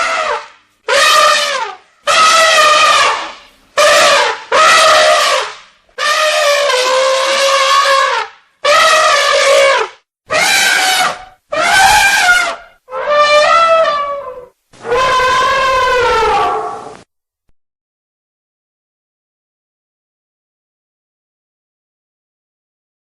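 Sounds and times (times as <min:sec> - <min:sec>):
elephant trumpeting: 0:00.0 - 0:17.0.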